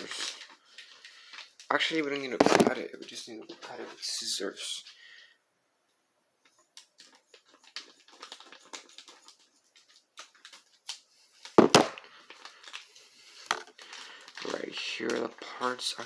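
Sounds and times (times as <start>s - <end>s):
packaging clicks and crinkles: 6.6s - 16.0s
loud sharp snap: 11.6s - 12.0s.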